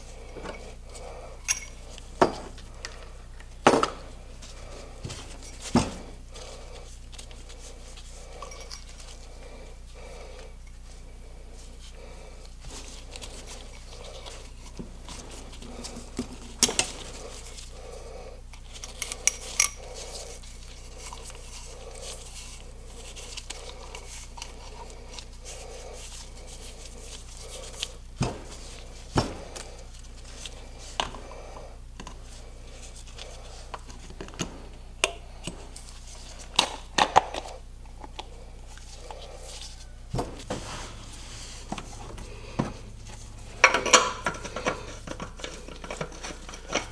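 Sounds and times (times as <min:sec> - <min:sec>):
steady low hum: 0:00.0 - 0:46.9
metal tools clinking: 0:01.4 - 0:01.9, 0:08.4 - 0:09.0.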